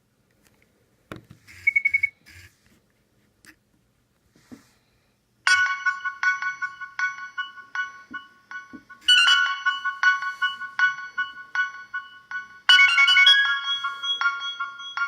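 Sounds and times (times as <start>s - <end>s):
mobile phone ringtone melody: 5.5s - 15.0s.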